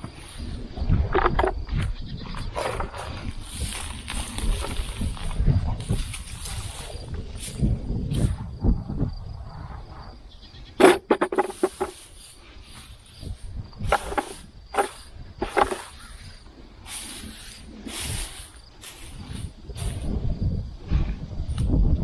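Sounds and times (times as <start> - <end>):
hay and plants rustling and crackling: 1.9 - 8.6, 11.4 - 20.2.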